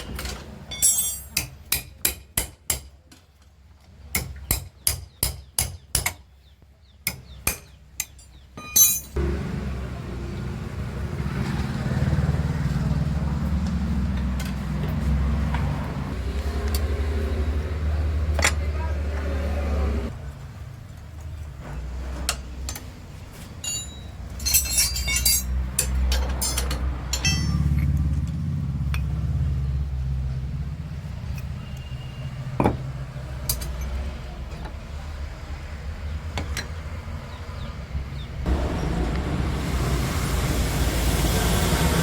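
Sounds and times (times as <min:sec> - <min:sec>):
metal tools clinking: 0:00.0 - 0:01.5, 0:08.0 - 0:09.2, 0:22.7 - 0:29.1, 0:33.4 - 0:34.0
low mechanical hum: 0:38.5 - 0:42.0.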